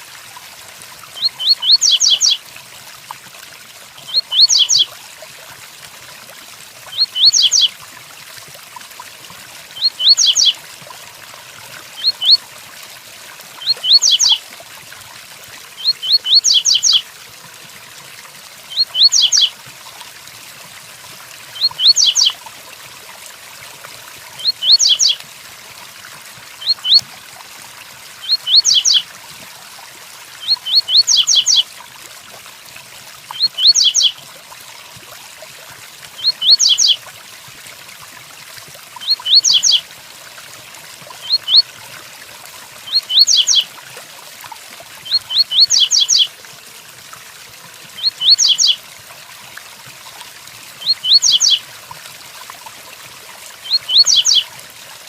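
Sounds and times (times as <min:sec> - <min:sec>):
bird singing whistled notes: 0:01.2 - 0:02.4, 0:04.1 - 0:04.9, 0:07.0 - 0:07.7, 0:09.8 - 0:10.5, 0:12.0 - 0:12.4, 0:13.6 - 0:14.4, 0:15.8 - 0:17.0, 0:18.7 - 0:19.5, 0:21.6 - 0:22.3, 0:24.4 - 0:25.2, 0:28.2 - 0:29.0, 0:30.4 - 0:31.6, 0:33.4 - 0:34.1, 0:36.2 - 0:37.0, 0:39.2 - 0:39.8, 0:41.2 - 0:41.6, 0:42.9 - 0:43.6, 0:45.1 - 0:46.3, 0:48.0 - 0:48.8, 0:50.8 - 0:51.6, 0:53.6 - 0:54.4.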